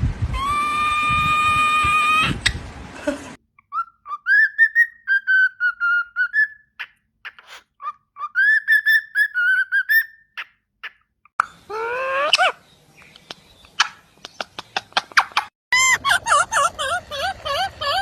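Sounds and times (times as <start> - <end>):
parrot whistling a tune: 3.6 - 10.5.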